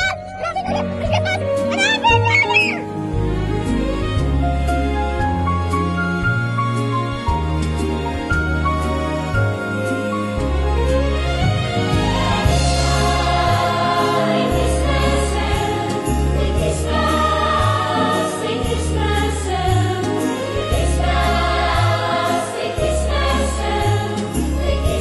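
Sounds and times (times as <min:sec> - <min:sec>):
choir singing christmas music: 0:09.2 - 0:25.0.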